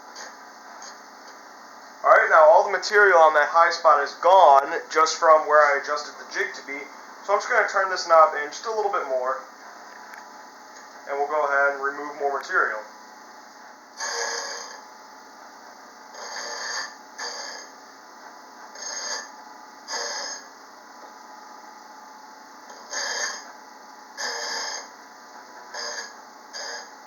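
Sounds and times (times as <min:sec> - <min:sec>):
bench grinder running hum: 0:16.1 - 0:17.7, 0:18.8 - 0:19.3, 0:19.9 - 0:20.5, 0:22.7 - 0:23.6, 0:24.2 - 0:24.9, 0:25.6 - 0:27.0.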